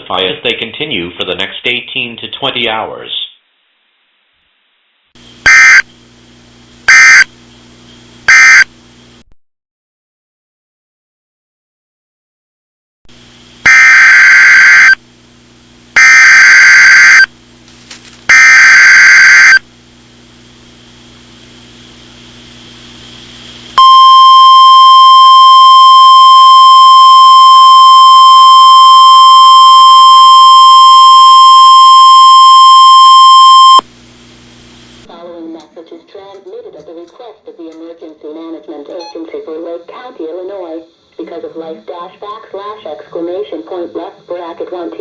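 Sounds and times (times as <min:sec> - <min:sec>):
loud steady single-tone signal: 0:05.4 - 0:05.9, 0:06.9 - 0:07.4, 0:08.3 - 0:08.8, 0:13.6 - 0:15.0, 0:16.0 - 0:17.3, 0:18.3 - 0:19.7, 0:23.8 - 0:33.9
screechy digital data tones: 0:13.7 - 0:15.0, 0:16.0 - 0:17.3, 0:18.3 - 0:19.6.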